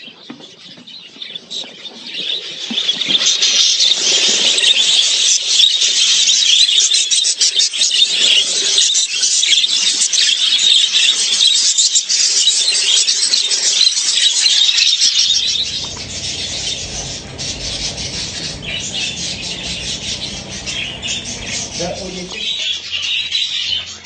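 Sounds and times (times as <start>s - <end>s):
budgerigars chattering: 15.2s - 22.5s
steady low hum: 15.2s - 22.5s.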